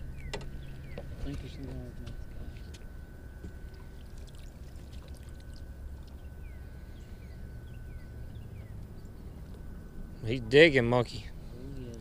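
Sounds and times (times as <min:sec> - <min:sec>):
faint steady whine: 0:00.0 - 0:12.0
low steady rumble: 0:00.0 - 0:12.0
water lapping against boat hull: 0:00.2 - 0:06.2.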